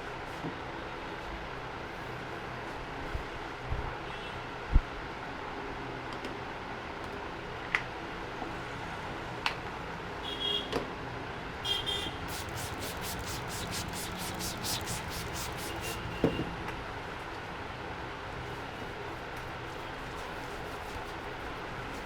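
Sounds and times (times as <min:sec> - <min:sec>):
street traffic: 0:08.0 - 0:22.0
vehicle horn tooting: 0:10.3 - 0:10.8, 0:11.7 - 0:12.2
rhythmic crisp strokes: 0:12.3 - 0:16.1.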